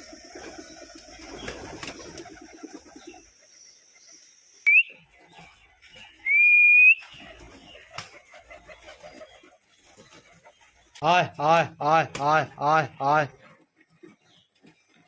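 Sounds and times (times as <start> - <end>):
pigeons cooing: 0.0 - 3.5, 7.0 - 10.9
rising whistle: 4.7 - 4.9, 6.2 - 7.0.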